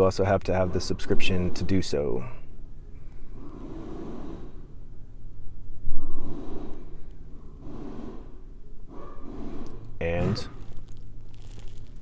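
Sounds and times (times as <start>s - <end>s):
steady low hum: 0.0s - 12.0s
person breathing: 3.0s - 4.8s, 6.1s - 9.8s.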